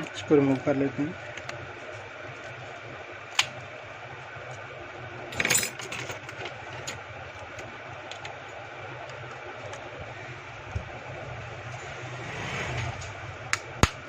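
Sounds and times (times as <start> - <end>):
steady low hum: 0.0 - 14.0
phone parts clattering: 5.3 - 7.0.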